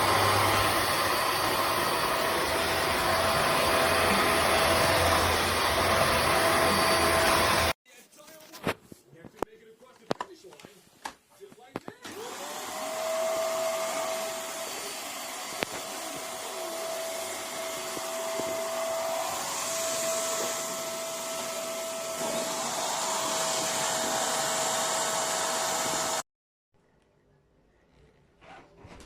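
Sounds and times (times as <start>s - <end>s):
vacuum cleaner motor whine: 0.0s - 7.8s, 12.0s - 26.2s.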